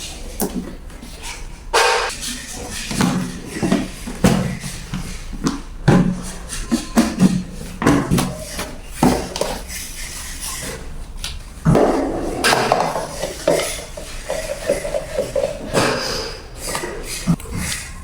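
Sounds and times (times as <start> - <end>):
plastic parts knocking and clattering: 11.7 - 16.9.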